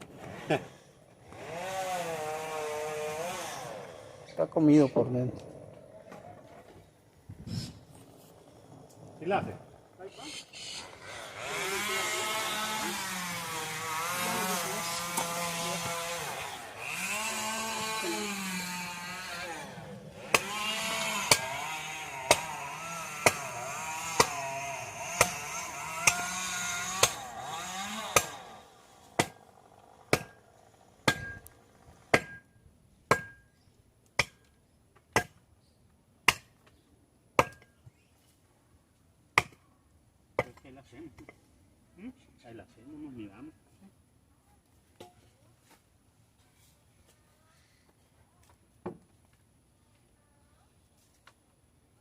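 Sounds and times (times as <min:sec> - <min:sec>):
small motor running: 0:07.9 - 0:32.1.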